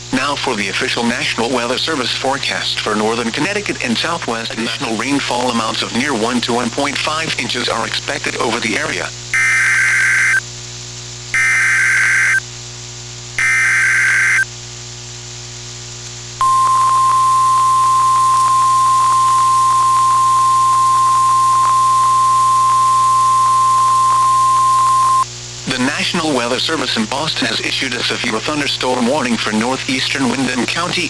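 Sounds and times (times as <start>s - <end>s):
radio static hiss: 0.0s - 31.0s
faint radio crackles: 0.2s - 10.4s, 13.4s - 14.4s, 16.0s - 25.9s
steady warning alarm tone: 9.3s - 10.4s, 11.4s - 12.4s, 13.4s - 14.5s, 16.4s - 25.2s
digital header tone bursts: 9.4s - 10.4s, 11.4s - 12.4s, 13.4s - 14.5s, 16.4s - 25.2s.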